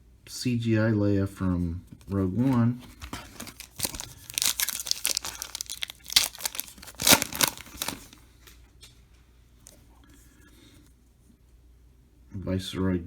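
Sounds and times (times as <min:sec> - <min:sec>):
wrapper tearing and crinkling: 0:03.0 - 0:08.2.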